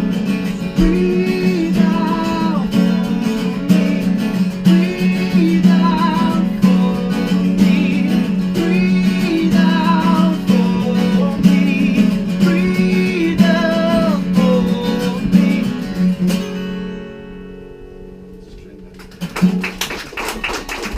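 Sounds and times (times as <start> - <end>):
strummed acoustic guitar: 0.0 - 19.7
acoustic band playing: 0.0 - 19.9.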